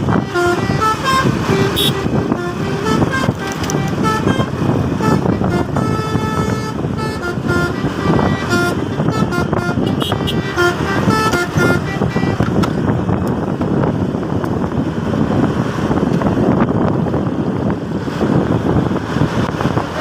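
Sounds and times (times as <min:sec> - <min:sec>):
bus horn playing a tune: 0:00.0 - 0:13.2
vehicle and road noise: 0:00.0 - 0:20.0.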